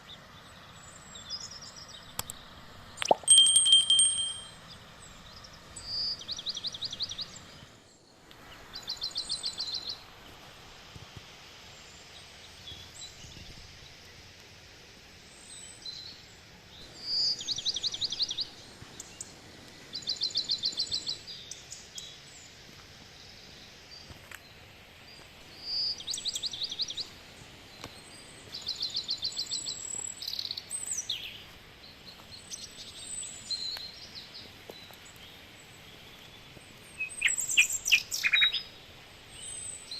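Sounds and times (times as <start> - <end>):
songbird singing with trill: 0.0 - 8.1, 15.4 - 19.3, 19.9 - 22.5, 25.1 - 39.9
soft forest background hiss: 0.0 - 39.9.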